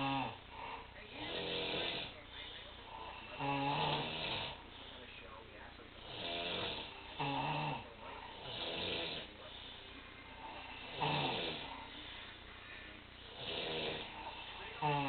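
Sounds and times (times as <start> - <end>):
person snoring: 0.0 - 2.2, 2.8 - 5.0, 6.0 - 15.0.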